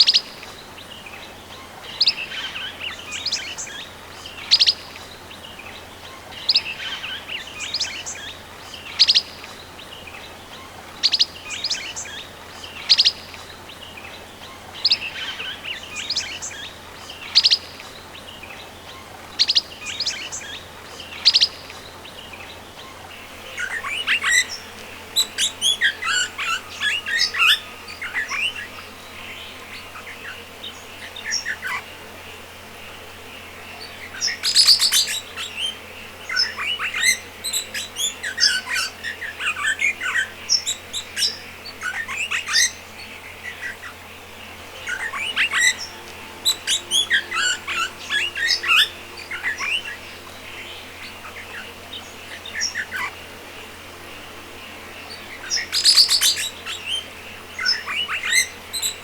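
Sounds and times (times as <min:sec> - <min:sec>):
parrots chirping: 0:34.2 - 0:59.0.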